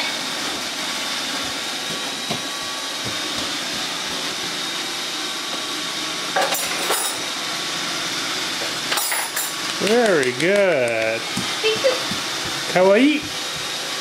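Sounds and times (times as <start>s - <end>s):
metal cutlery clinking: 6.4s - 7.2s, 8.9s - 9.6s.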